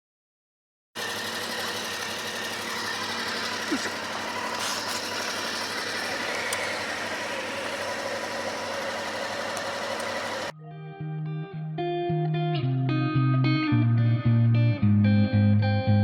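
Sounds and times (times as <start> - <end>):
motorcycle engine running: 1.0 - 10.5.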